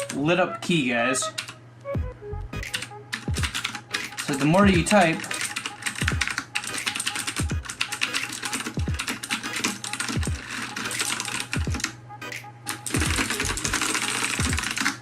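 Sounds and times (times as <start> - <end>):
background music low thump: 1.8 - 5.0, 6.0 - 7.7, 8.7 - 9.1, 10.2 - 10.5, 11.6 - 14.9
mechanical keyboard typing: 2.6 - 12.0, 12.7 - 15.0.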